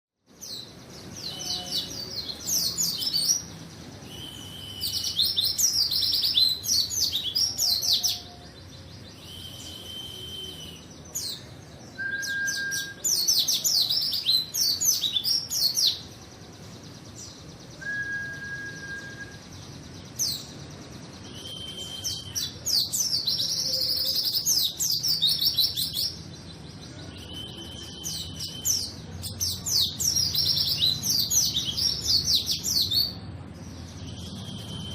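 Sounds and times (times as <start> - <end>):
bird twittering chirps: 0.3 - 34.9
bird whistled notes: 4.0 - 6.8, 9.1 - 10.9, 12.0 - 13.3, 17.7 - 19.5, 21.2 - 26.1, 27.0 - 29.0.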